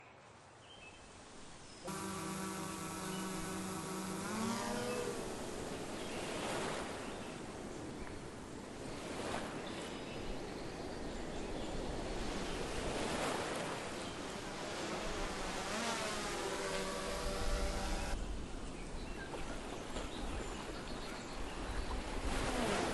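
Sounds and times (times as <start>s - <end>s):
steady hiss-like background: 0.0s - 19.0s
long low pitched call: 1.9s - 5.9s.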